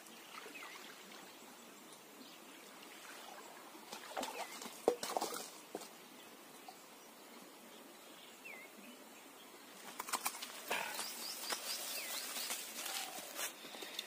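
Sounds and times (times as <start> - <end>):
small birds chirping: 5.6 - 14.0
rustling: 9.9 - 14.0.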